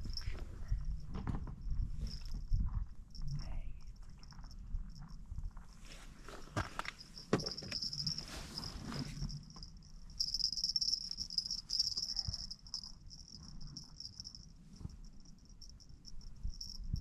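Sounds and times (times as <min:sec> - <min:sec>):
rustling: 0:05.6 - 0:15.0.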